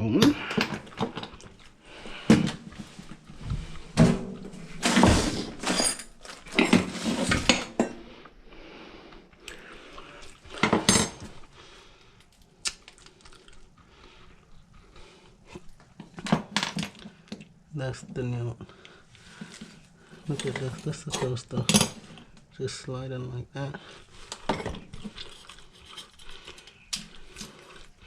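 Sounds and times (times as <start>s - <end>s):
hard parts clanking and rattling: 3.9s - 8.0s.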